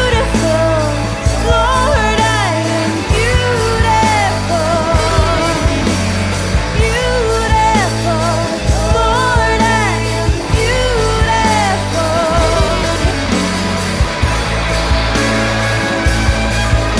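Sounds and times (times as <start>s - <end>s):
rock song with singing: 0.0s - 16.9s.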